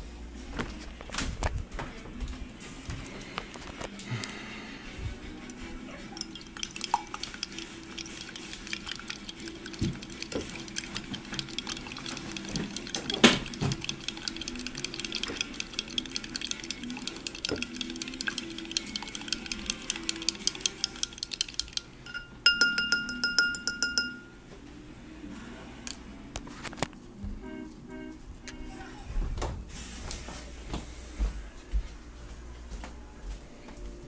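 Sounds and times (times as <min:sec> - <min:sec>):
dishes clinking and knocking: 0:11.2 - 0:14.2, 0:22.1 - 0:24.3.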